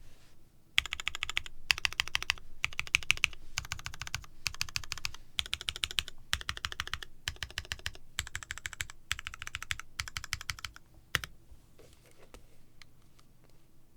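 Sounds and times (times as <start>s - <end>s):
mechanical keyboard typing: 0.8s - 11.3s.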